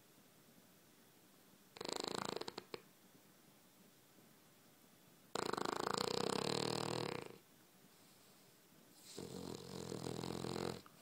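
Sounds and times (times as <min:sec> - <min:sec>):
dog snoring: 0:01.8 - 0:02.8, 0:05.3 - 0:07.4, 0:09.0 - 0:11.0.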